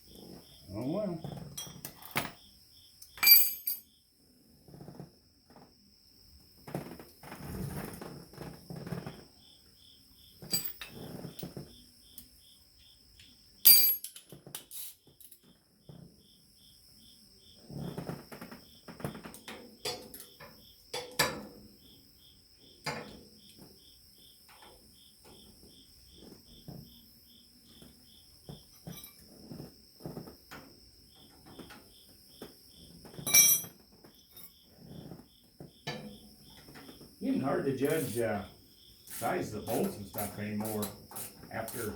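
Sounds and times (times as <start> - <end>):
cricket chirping: 0.0 - 41.9
metal tools clinking: 3.1 - 3.9, 10.4 - 11.0, 13.7 - 15.4, 33.2 - 33.8.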